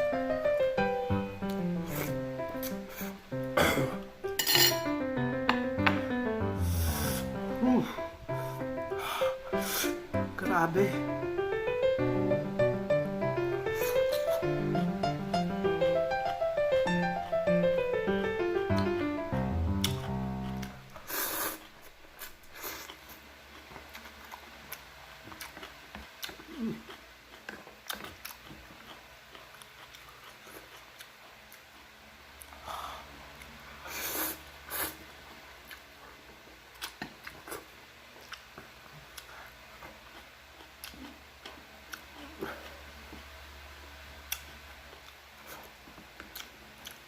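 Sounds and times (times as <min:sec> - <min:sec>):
person chewing noodles: 0:01.4 - 0:04.1, 0:06.6 - 0:10.0, 0:18.8 - 0:43.3, 0:44.2 - 0:47.0.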